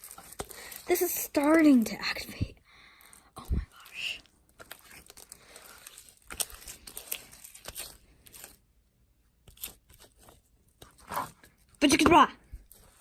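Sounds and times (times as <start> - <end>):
slime crackling and tearing: 3.7 - 8.6, 9.4 - 10.3.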